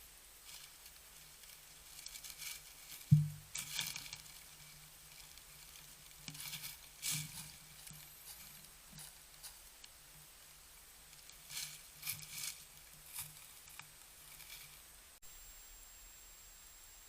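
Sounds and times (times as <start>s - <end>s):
animal footsteps crunching: 0.4s - 14.9s
sharp thump: 3.1s - 3.4s.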